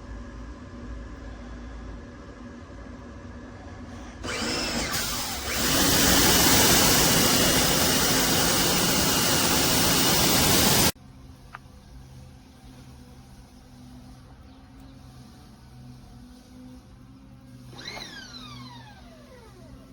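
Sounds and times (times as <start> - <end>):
pressure washer whine: 4.2 - 11.0
water spraying hiss: 4.9 - 11.0.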